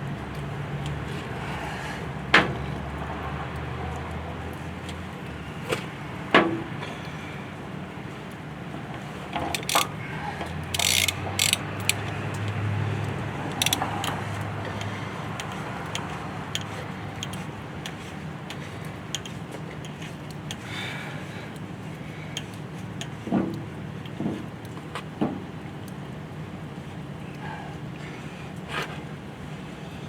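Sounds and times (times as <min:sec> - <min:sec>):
metal clicks: 0:09.4 - 0:10.0, 0:10.7 - 0:12.6, 0:13.5 - 0:14.2.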